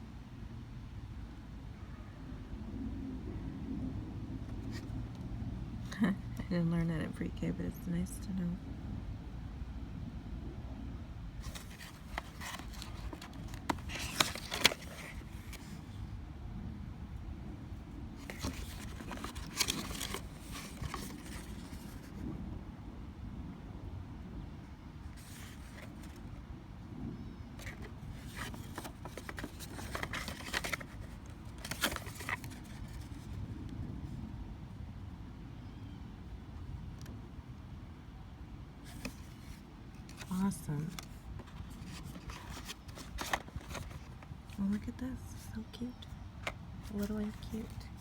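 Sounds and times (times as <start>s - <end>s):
packaging crinkling: 11.4s - 15.8s, 18.2s - 22.0s, 27.6s - 33.3s, 41.0s - 44.2s.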